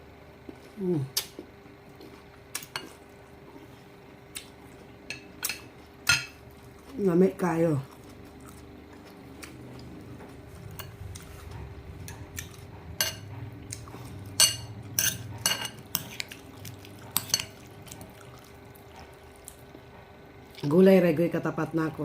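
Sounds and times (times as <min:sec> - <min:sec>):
cutlery clinking on a dish: 0:14.4 - 0:16.2.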